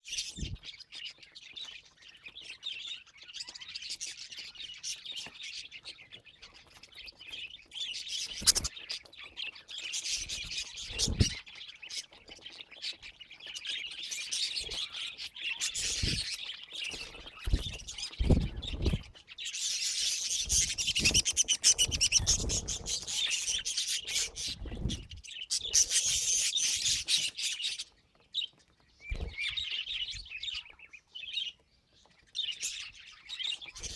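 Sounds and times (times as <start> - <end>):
budgerigars chirping: 5.7 - 28.0.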